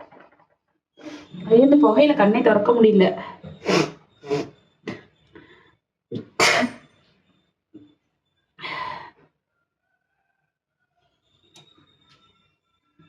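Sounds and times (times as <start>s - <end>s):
woman coughing: 6.4s - 6.8s.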